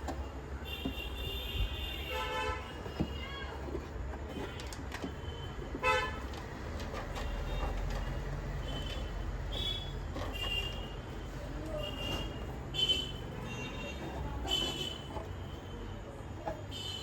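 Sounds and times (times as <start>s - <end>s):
low traffic rumble: 0.0s - 17.0s
vehicle horns tooting: 0.6s - 3.5s, 4.2s - 6.4s, 8.6s - 11.0s, 11.7s - 15.9s.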